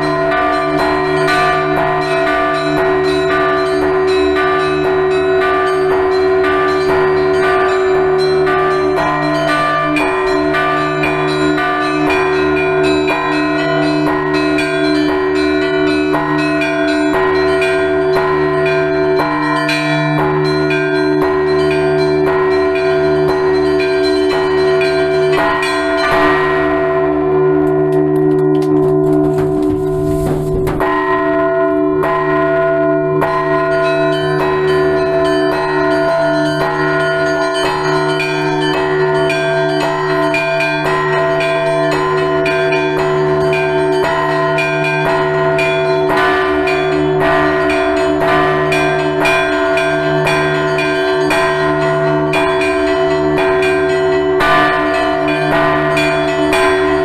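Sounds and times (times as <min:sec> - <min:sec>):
hum of large bells: 0:00.0 - 0:57.0
small bells struck rapidly: 0:33.4 - 0:57.0.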